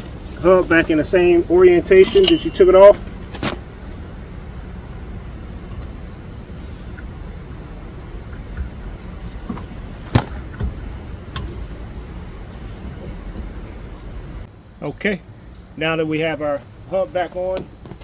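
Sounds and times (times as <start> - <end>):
steady low rumble: 0.0 - 18.0
metal clinks and knocks: 1.9 - 3.6.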